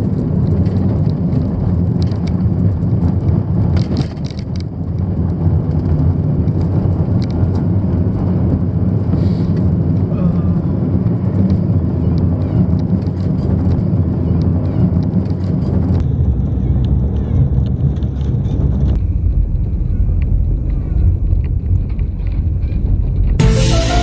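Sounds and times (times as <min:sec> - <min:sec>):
car engine and road rumble: 0:00.0 - 0:24.0
music: 0:23.4 - 0:24.0.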